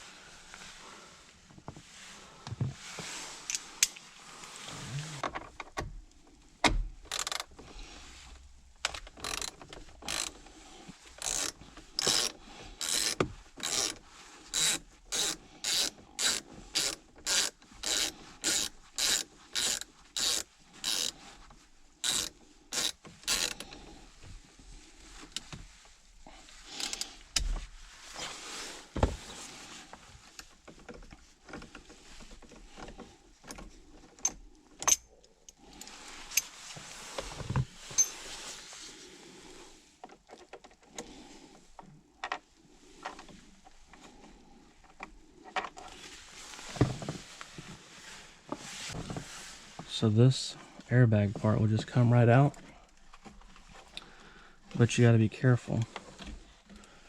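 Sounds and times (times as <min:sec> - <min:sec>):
ratchet wrench clicking: 0:07.1 - 0:07.4, 0:11.2 - 0:14.0, 0:14.6 - 0:21.1, 0:22.0 - 0:23.6.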